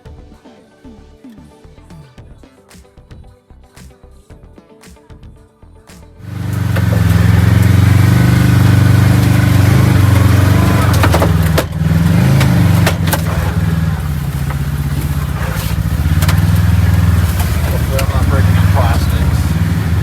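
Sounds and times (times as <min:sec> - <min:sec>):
engine running at low revs: 0:06.2 - 0:20.0.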